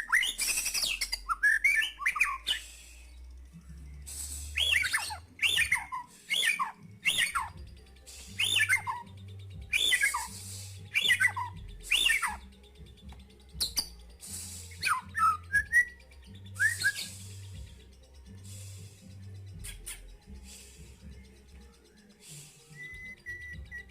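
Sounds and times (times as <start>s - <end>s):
bird singing whistled phrases: 0.0s - 3.0s, 4.0s - 12.5s, 13.6s - 17.8s, 22.2s - 23.9s.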